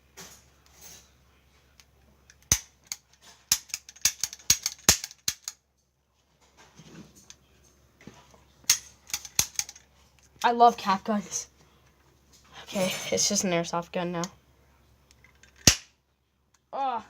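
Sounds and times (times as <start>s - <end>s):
toy cap pistol snaps: 2.3s - 5.6s, 15.5s - 15.9s.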